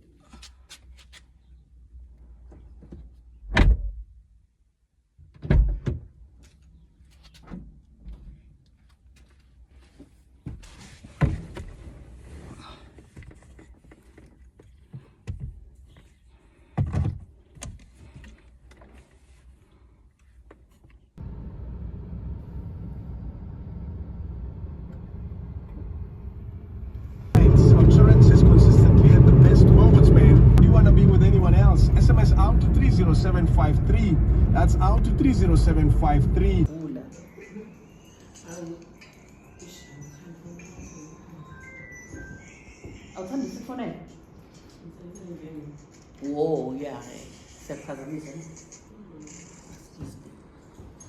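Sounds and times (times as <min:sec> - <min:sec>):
car doors thumping shut: 0:03.5 - 0:04.0
car engine hum from inside: 0:21.2 - 0:36.7.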